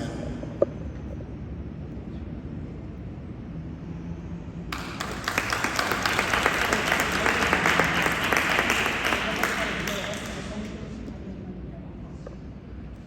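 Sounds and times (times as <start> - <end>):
low room rumble: 0.0 - 13.0
audience applauding: 4.7 - 10.8.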